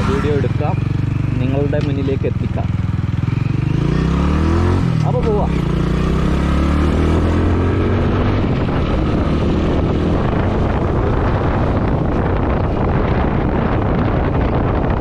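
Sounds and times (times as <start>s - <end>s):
motorcycle engine running: 0.0s - 15.0s
wind rushing over microphone: 0.0s - 15.0s.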